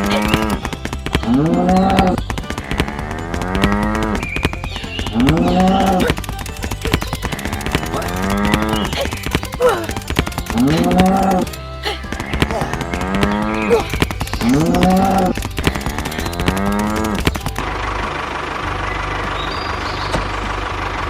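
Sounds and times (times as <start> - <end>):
patter of clicks: 0.0 - 17.6.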